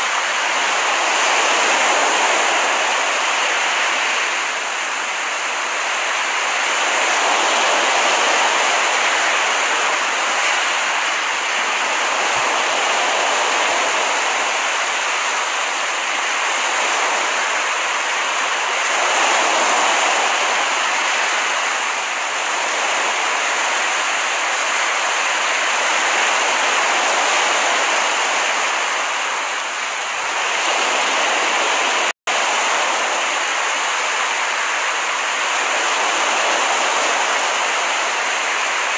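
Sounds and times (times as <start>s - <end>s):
ocean surf washing onto beach: 0.0s - 38.9s.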